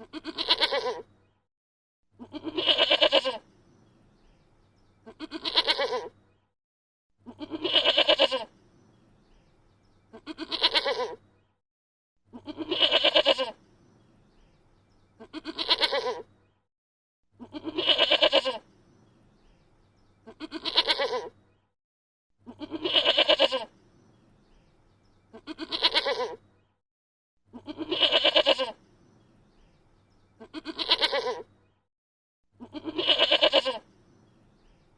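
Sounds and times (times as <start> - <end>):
goat bleating: 0.0 - 1.0, 2.2 - 3.4, 5.0 - 6.1, 7.2 - 8.5, 10.1 - 11.2, 12.3 - 13.6, 15.2 - 16.2, 17.4 - 18.6, 20.2 - 21.3, 22.5 - 23.7, 25.3 - 26.4, 27.5 - 28.8, 30.4 - 31.5, 32.6 - 33.8.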